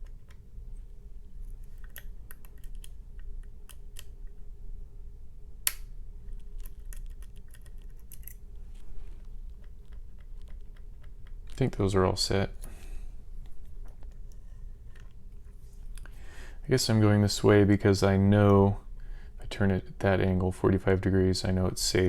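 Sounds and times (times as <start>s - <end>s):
faint low hum: 0.0s - 22.0s
lock pick metallic clicks: 5.6s - 8.4s.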